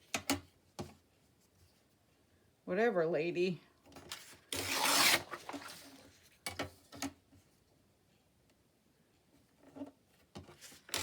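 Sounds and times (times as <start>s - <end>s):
paper sheets rustling: 4.1s - 6.3s.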